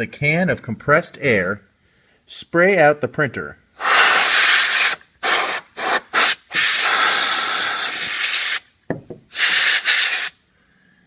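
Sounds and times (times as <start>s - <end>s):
compressed air spraying: 3.8s - 8.7s, 9.3s - 10.4s.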